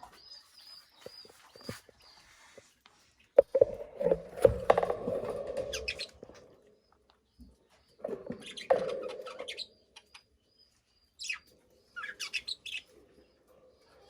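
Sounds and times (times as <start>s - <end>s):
budgerigar chirping: 11.2s - 12.9s.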